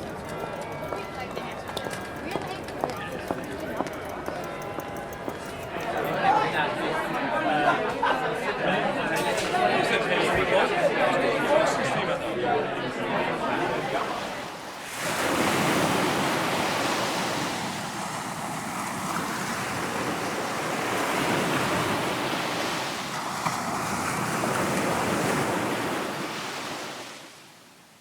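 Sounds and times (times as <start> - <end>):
waves washing in and back: 5.9 - 28.0.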